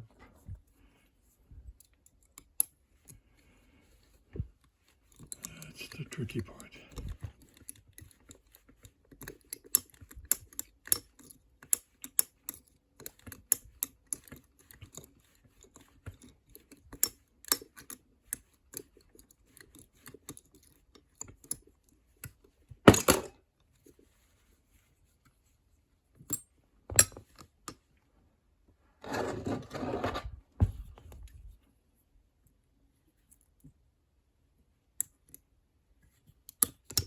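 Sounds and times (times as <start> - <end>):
metallic clicks of lock picking: 6.9 - 15.1, 15.7 - 21.6, 36.5 - 37.0.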